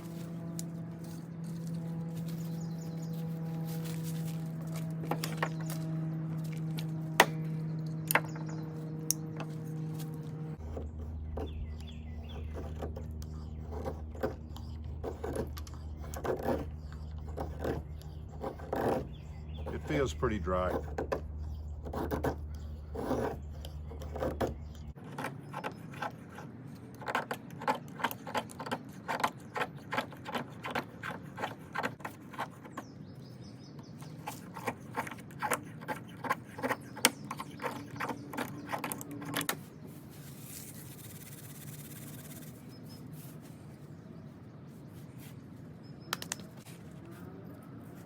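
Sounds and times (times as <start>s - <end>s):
knife scraping wood: 8.1s - 33.0s, 33.8s - 43.4s.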